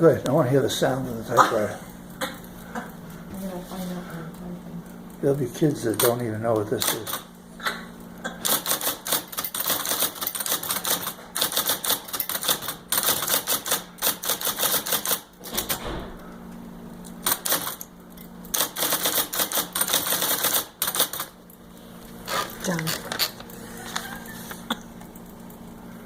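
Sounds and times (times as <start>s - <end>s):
typewriter motor humming: 4.2s - 7.4s, 8.4s - 16.4s, 17.0s - 25.7s
typewriter key strikes clacking: 5.9s - 7.3s, 8.4s - 15.8s, 17.2s - 17.9s, 18.5s - 21.4s.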